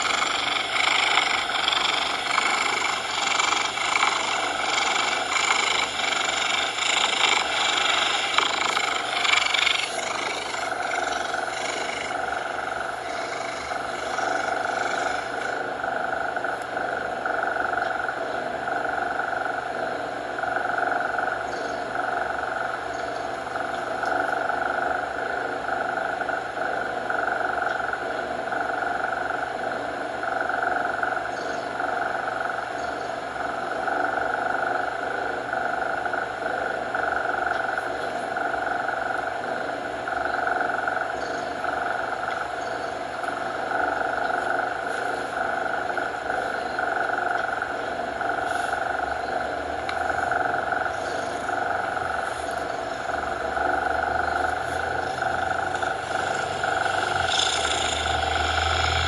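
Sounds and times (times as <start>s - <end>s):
cat purring: 0.0s - 17.9s, 48.2s - 59.0s
bright hiss: 54.4s - 59.0s.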